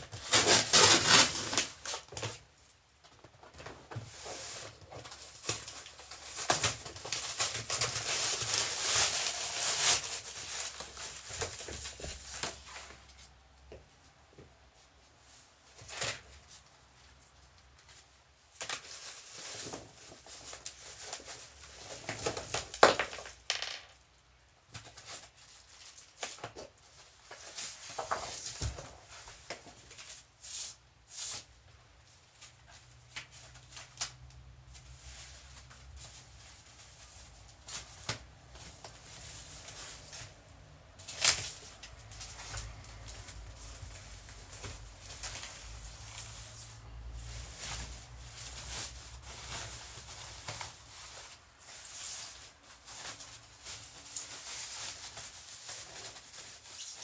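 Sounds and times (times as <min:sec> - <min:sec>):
cardboard rustling and tearing: 0:00.0 - 0:02.5, 0:03.4 - 0:13.0, 0:17.9 - 0:23.2.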